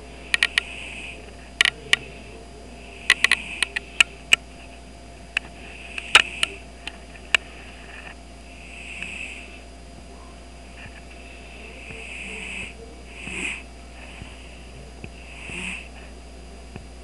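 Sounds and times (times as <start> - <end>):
sharp clicks and taps: 0.3 - 0.7, 1.6 - 2.0, 3.1 - 4.4
cat snoring: 0.4 - 1.2, 2.1 - 3.8, 8.5 - 9.6, 11.4 - 16.0.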